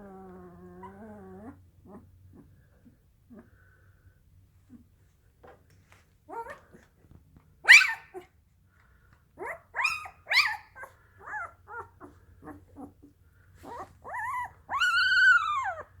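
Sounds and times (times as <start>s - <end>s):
puppy whining: 0.0s - 2.5s, 6.3s - 6.9s, 7.7s - 8.3s, 9.4s - 16.0s
puppy whimpering and yipping: 7.7s - 8.2s, 9.4s - 13.0s, 13.6s - 16.0s.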